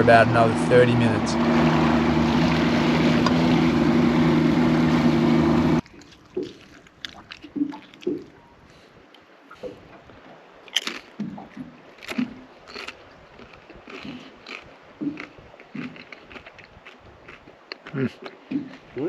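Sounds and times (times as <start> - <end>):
boat engine running: 0.0 - 5.8.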